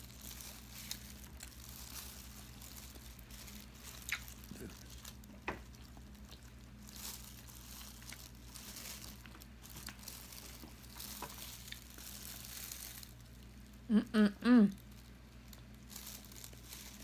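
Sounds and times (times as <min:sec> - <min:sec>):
low steady hum: 0:00.0 - 0:17.0
chewing with light clicks: 0:04.0 - 0:06.6.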